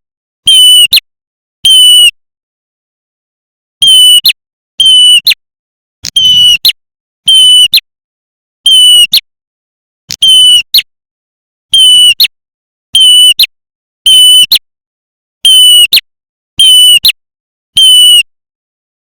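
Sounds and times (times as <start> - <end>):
bird shrill calls: 6.2 - 6.7.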